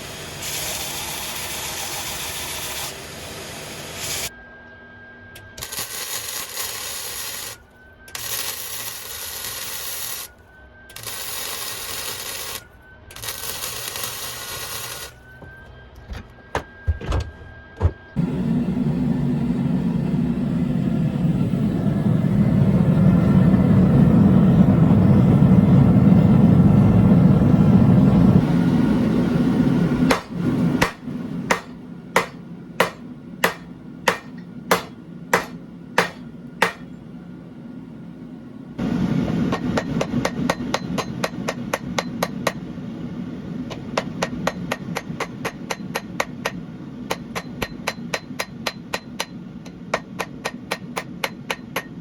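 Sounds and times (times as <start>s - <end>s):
hammer striking steel on anvil: 30.1s - 37.0s, 39.5s - 42.6s, 43.7s - 52.0s.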